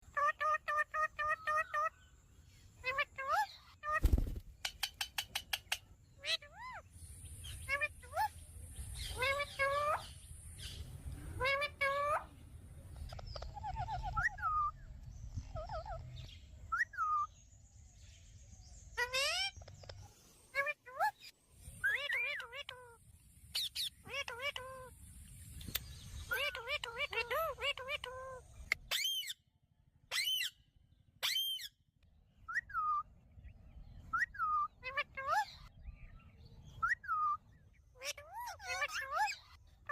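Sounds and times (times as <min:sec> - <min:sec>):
parrot calling: 0:00.1 - 0:02.0, 0:02.8 - 0:04.0, 0:04.8 - 0:12.4, 0:13.0 - 0:14.8, 0:15.4 - 0:17.3, 0:19.0 - 0:19.7, 0:20.5 - 0:23.0, 0:23.6 - 0:24.9, 0:26.2 - 0:29.4, 0:30.1 - 0:30.6, 0:34.1 - 0:35.7, 0:36.7 - 0:39.9.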